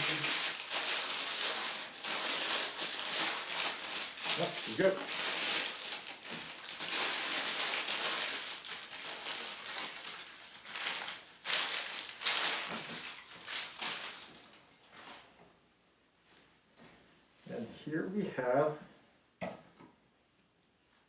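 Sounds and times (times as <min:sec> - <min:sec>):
wrapping paper crinkling: 0:00.0 - 0:15.3.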